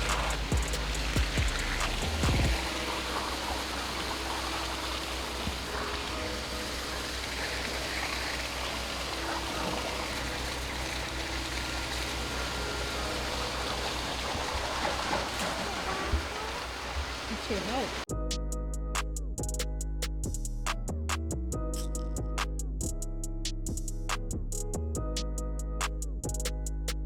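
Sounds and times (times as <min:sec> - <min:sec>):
engine running steadily: 0:00.0 - 0:16.6
constant rushing noise: 0:00.0 - 0:18.1.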